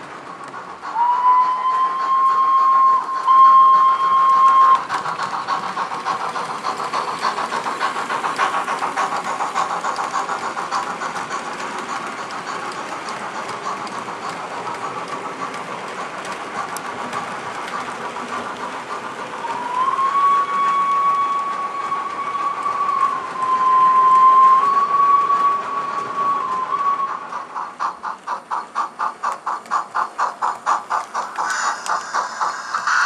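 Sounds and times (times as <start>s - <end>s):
steam exhaust chuffs: 0.0s - 33.0s
model train whistle: 1.0s - 4.8s, 19.5s - 27.1s.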